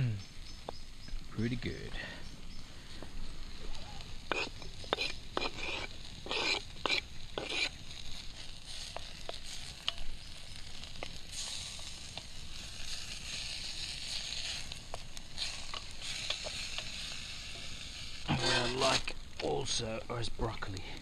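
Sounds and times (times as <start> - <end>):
food sizzling in a pan: 0.0 - 21.0.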